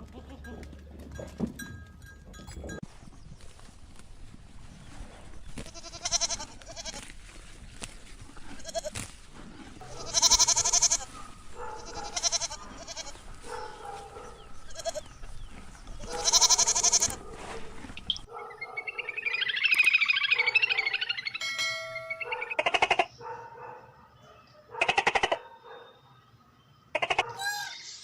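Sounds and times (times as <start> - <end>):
livestock bleating: 5.7 - 7.0, 9.8 - 15.1, 15.9 - 17.3.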